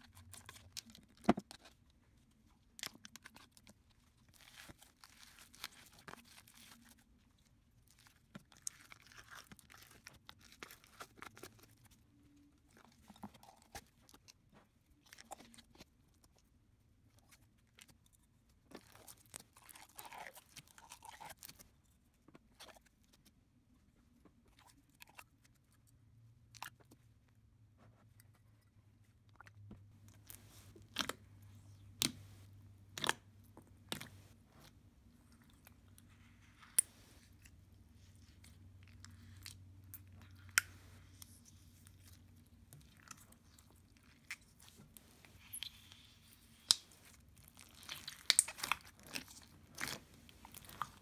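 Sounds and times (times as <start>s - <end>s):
slime squished by hand: 35.5s - 51.0s.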